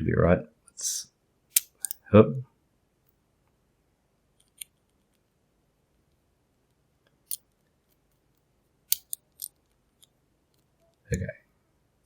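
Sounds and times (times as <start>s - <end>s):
combination lock wheel clicks: 1.6s - 2.0s.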